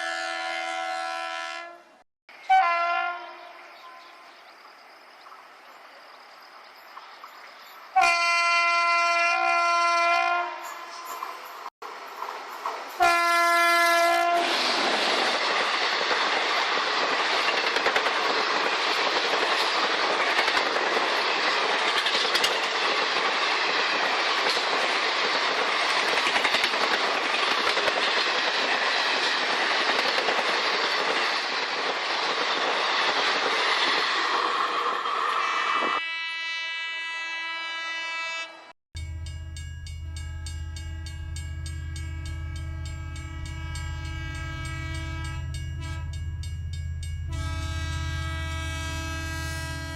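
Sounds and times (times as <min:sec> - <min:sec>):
train horn: 0:00.0 - 0:04.2, 0:08.0 - 0:11.0, 0:13.0 - 0:14.8, 0:36.0 - 0:49.9
train passing on rails: 0:03.5 - 0:49.9
deep horn chord: 0:39.0 - 0:49.9.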